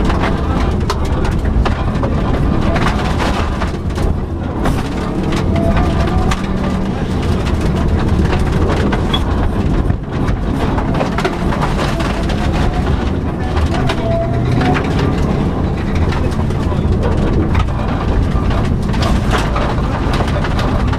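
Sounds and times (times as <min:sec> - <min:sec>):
rally car engine rumbling: 0:00.0 - 0:20.9
road debris knocking car: 0:00.0 - 0:20.9.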